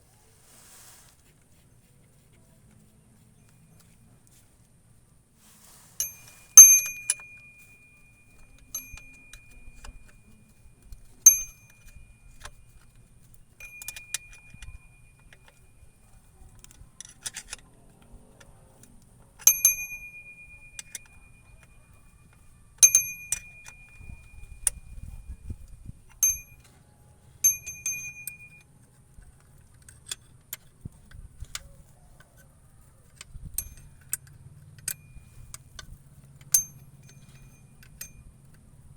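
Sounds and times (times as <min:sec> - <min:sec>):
metal tools clinking on metal: 0:06.0 - 0:17.6, 0:19.4 - 0:24.9, 0:26.2 - 0:26.8, 0:27.4 - 0:28.6, 0:33.6 - 0:38.7.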